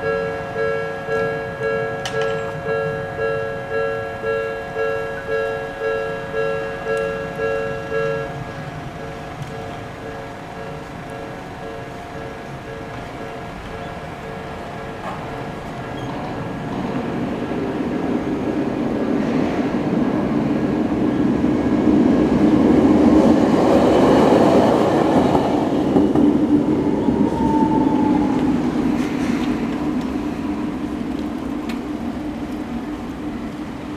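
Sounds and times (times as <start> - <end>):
tram wheels and motors rumbling: 0.0 - 33.9.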